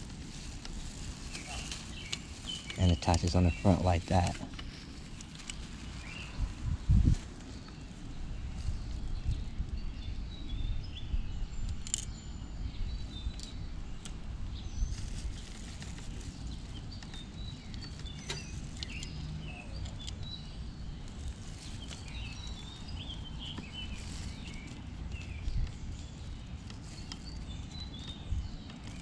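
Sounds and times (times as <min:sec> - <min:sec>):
steady low rumble: 0:00.0 - 0:11.9
birds chirping: 0:00.6 - 0:29.0.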